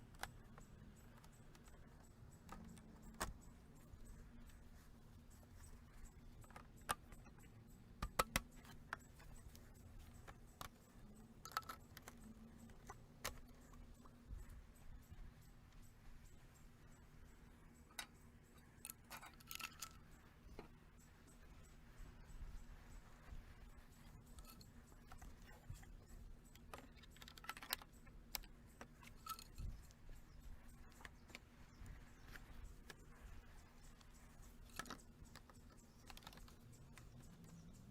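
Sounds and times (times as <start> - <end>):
plastic brackets clicking together: 0.0 - 14.4, 17.8 - 20.8, 23.9 - 33.1.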